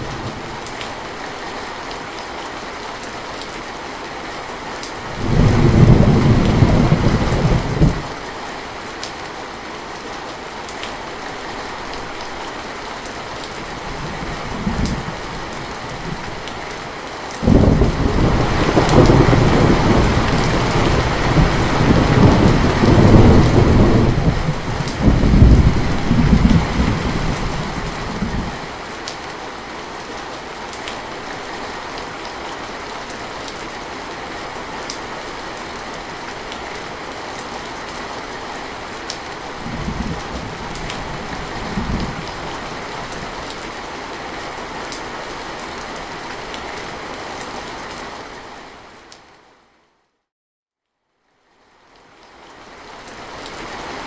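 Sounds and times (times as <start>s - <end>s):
steady rain: 0.0s - 50.1s, 51.1s - 54.0s
thunder rumbling: 5.1s - 8.1s, 17.4s - 28.6s, 39.6s - 43.4s.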